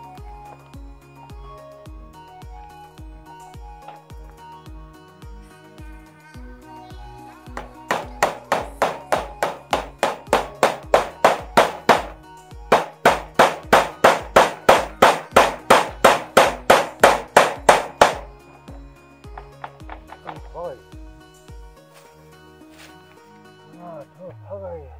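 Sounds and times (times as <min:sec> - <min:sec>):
background music: 0:00.0 - 0:24.9
hammering: 0:07.6 - 0:20.5.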